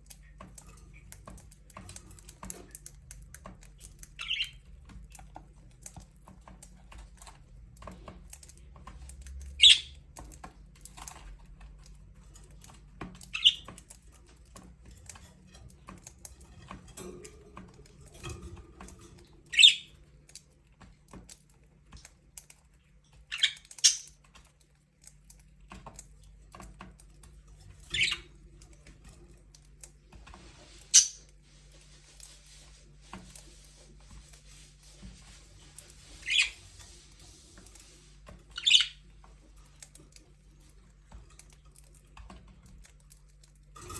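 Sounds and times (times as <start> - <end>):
budgerigars chirping: 9.6 - 9.9, 19.6 - 19.9, 36.2 - 36.6, 38.6 - 39.0.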